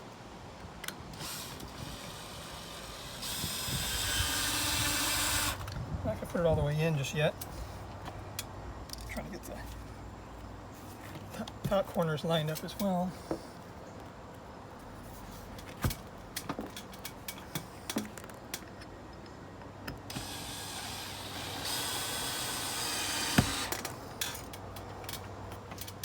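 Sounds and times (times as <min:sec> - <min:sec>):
power drill driving screw: 0:01.2 - 0:05.7, 0:20.1 - 0:23.9.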